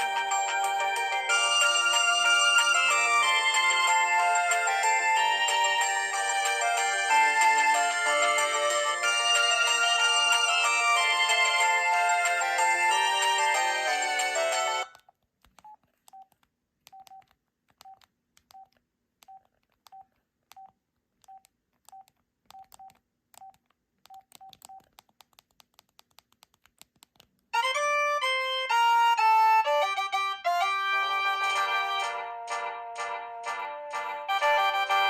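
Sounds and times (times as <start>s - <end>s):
polyphonic ringtone: 0.0s - 14.9s, 27.6s - 35.0s
phone key beeps: 15.6s - 24.9s.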